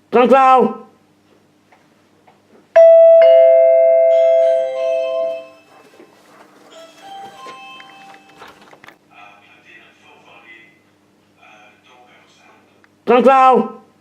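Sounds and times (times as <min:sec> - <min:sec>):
door chime ding-dong: 0:02.8 - 0:05.8, 0:06.8 - 0:08.6.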